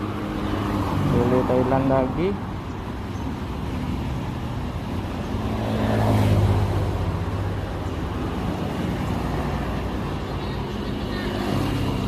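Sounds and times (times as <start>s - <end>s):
vehicle engine passing by: 3.7s - 10.2s.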